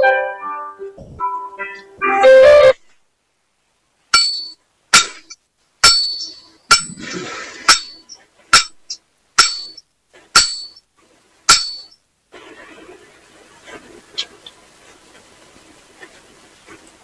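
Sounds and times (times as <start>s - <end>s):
sharp ringing clinks: 4.2s - 4.6s, 5.9s - 6.9s.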